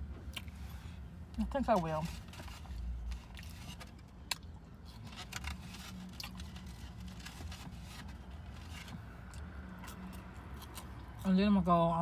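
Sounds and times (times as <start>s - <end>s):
person chewing food: 6.1s - 6.7s, 9.2s - 11.2s.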